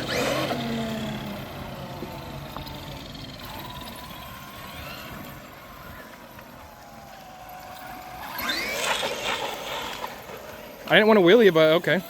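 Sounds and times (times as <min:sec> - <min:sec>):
electric toy car motor whining: 0:00.0 - 0:05.5, 0:07.7 - 0:10.8.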